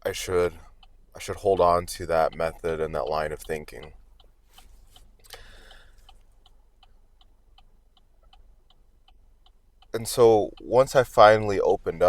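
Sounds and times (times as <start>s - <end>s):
faint steady ticking: 0.0s - 12.0s
soft breath-like rush: 4.5s - 6.2s.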